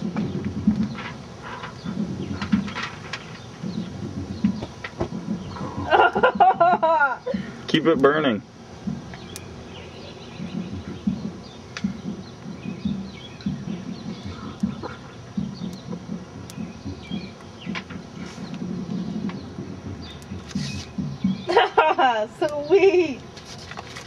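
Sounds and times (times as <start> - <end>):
low rumble: 0.0 - 7.2, 8.8 - 22.5
faint bird chirps: 9.1 - 21.6.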